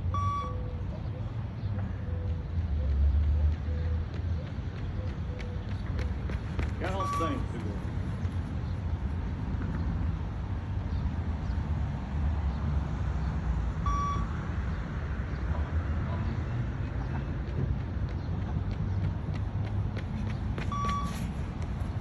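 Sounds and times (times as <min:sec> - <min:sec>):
high electronic beep: 0:00.1 - 0:00.6, 0:13.9 - 0:14.3.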